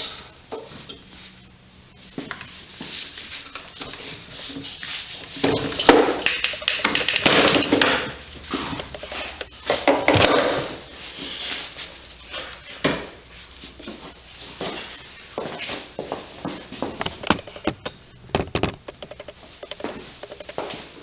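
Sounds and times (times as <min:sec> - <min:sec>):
knocks: 0:17.0 - 0:20.5
metal objects clattering: 0:17.0 - 0:20.6.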